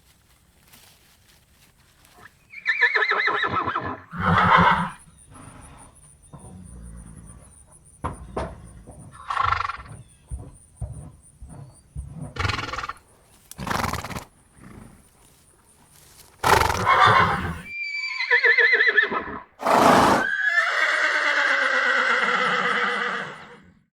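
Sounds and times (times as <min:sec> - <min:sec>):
horse whinnying: 0:02.5 - 0:05.0, 0:16.4 - 0:23.8
horse hooves knocking: 0:07.7 - 0:13.7
horse blowing breath: 0:19.6 - 0:20.3.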